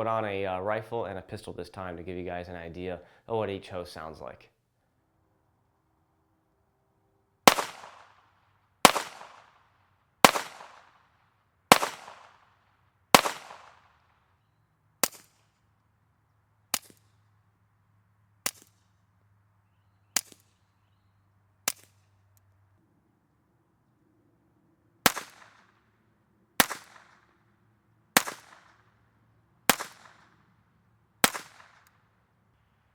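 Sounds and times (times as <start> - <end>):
suppressed gunshots: 7.4 - 8.2, 8.8 - 9.6, 10.2 - 11.0, 11.7 - 12.4, 13.1 - 13.8, 25.0 - 25.8, 26.6 - 27.4, 28.2 - 28.9, 29.7 - 30.4, 31.2 - 31.9.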